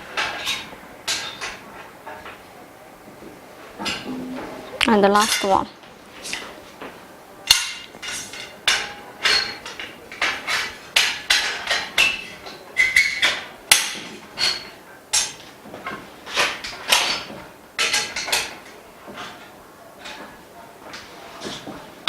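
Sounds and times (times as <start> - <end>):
metal frame bars knocking: 3.8 - 5.5.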